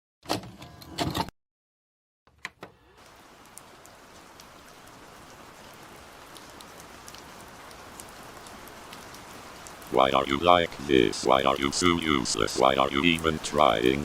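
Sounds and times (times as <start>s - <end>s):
rain hissing: 2.8s - 14.0s
scattered raindrops: 2.9s - 14.0s.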